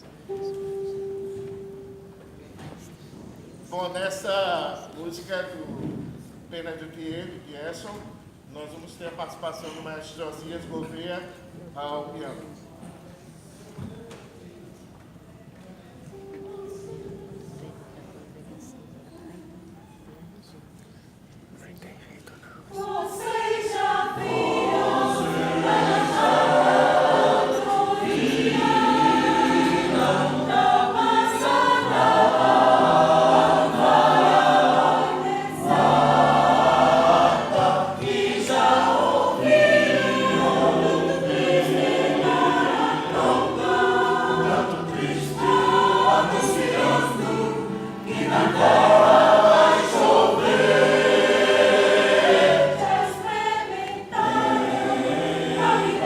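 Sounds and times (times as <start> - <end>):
choir singing: 22.7 - 56.0
piano accompaniment: 23.4 - 56.0.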